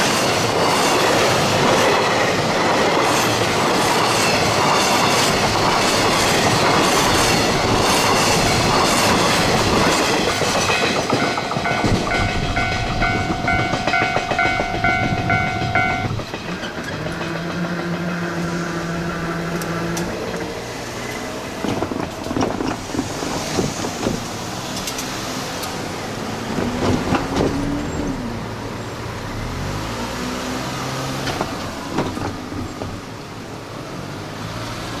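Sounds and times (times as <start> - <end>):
wheels clattering over rail joints: 0.0 - 28.6, 31.0 - 33.7
train rumbling past: 0.0 - 30.1
level crossing warning bell: 4.8 - 16.5.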